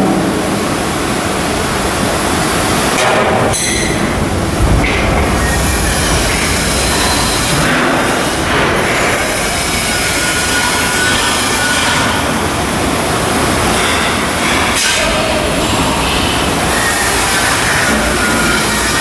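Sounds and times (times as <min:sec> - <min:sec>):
industrial din: 0:00.0 - 0:19.0
faint high squealing tones: 0:14.9 - 0:19.0.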